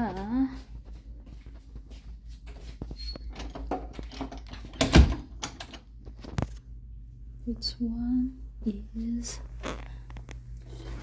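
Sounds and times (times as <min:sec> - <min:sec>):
cage clicks and rustles: 0:01.4 - 0:06.6.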